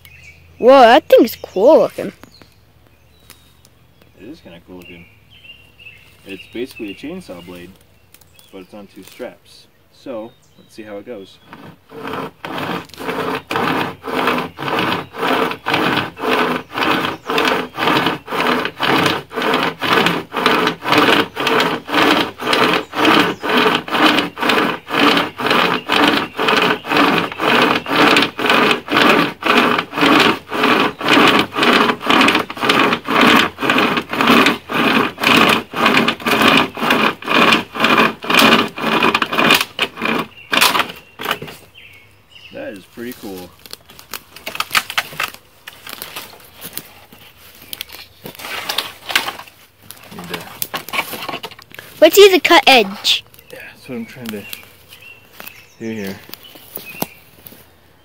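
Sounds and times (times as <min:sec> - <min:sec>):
hand chainsaw sawing wood: 0:10.9 - 0:41.8, 0:42.8 - 0:53.3, 0:53.9 - 0:57.6.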